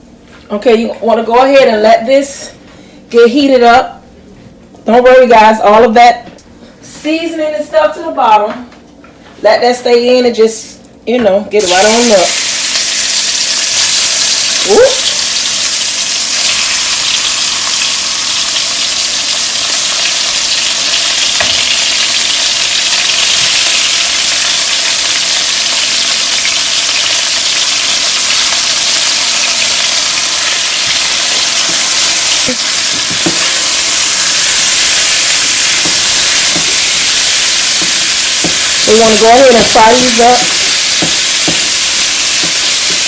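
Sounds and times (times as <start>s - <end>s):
chicken frying in hot grease: 11.6s - 43.0s
grease popping: 12.4s - 43.0s.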